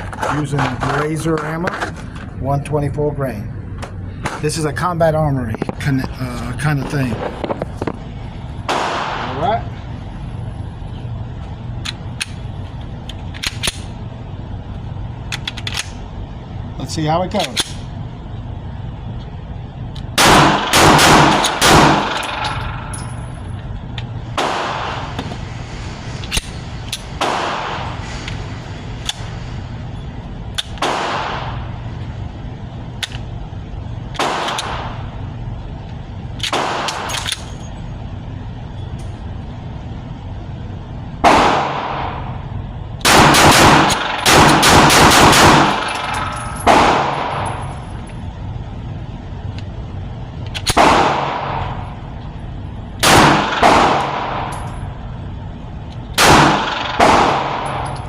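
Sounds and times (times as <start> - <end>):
pistol gunshots: 8.7 - 9.5, 20.2 - 22.4, 24.4 - 25.2, 27.2 - 28.0, 30.7 - 31.6, 34.2 - 35.0, 36.4 - 37.2, 41.2 - 42.3, 43.0 - 46.0, 46.6 - 47.4, 50.6 - 51.8, 53.0 - 54.5, 56.2 - 58.0.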